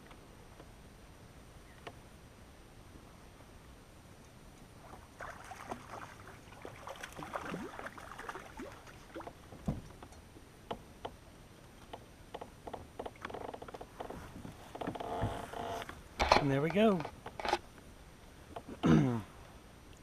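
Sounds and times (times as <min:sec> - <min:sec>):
water splashing: 0:04.8 - 0:10.0.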